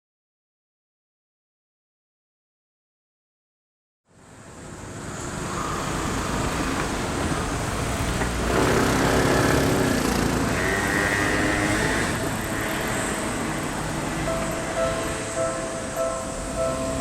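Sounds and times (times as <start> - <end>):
car passing: 4.4 - 17.0.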